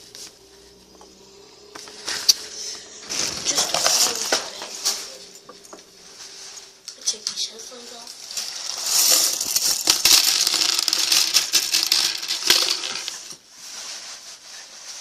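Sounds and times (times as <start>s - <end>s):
plastic pieces clattering: 3.0s - 5.7s, 8.0s - 13.4s.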